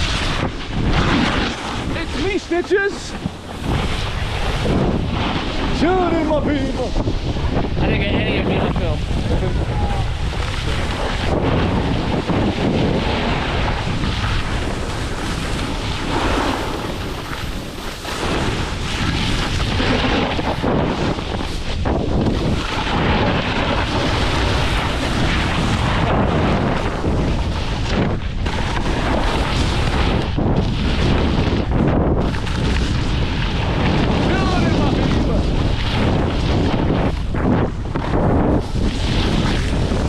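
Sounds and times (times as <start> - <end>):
heavy wind buffeting microphone: 0.0 - 40.0.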